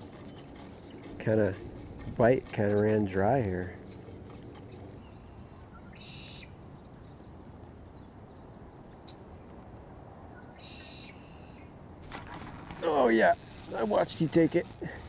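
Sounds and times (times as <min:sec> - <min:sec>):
short high bird calls: 0:05.0 - 0:06.6.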